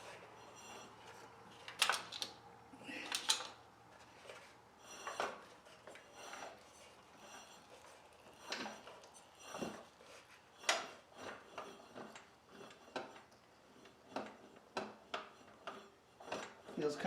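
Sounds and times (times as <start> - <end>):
metallic clicks and knocks: 1.6 - 2.4, 3.1 - 3.6.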